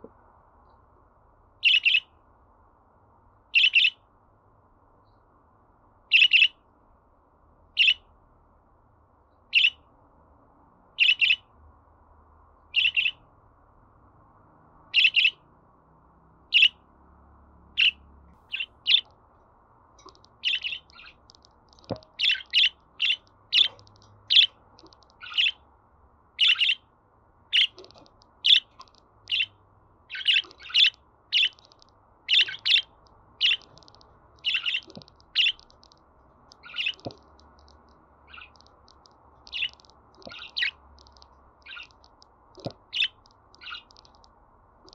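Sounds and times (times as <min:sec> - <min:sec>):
budgerigar chirping: 0:01.6 - 0:02.1, 0:03.5 - 0:04.0, 0:06.1 - 0:06.6, 0:07.8 - 0:08.1, 0:09.5 - 0:09.8, 0:11.0 - 0:11.5, 0:12.7 - 0:13.2, 0:14.9 - 0:15.4, 0:16.5 - 0:16.8, 0:17.7 - 0:19.1, 0:20.0 - 0:21.4, 0:22.1 - 0:25.6, 0:26.4 - 0:26.9, 0:27.5 - 0:35.7, 0:36.5 - 0:37.2, 0:38.2 - 0:38.6, 0:39.5 - 0:40.8, 0:41.6 - 0:42.0, 0:42.6 - 0:44.0.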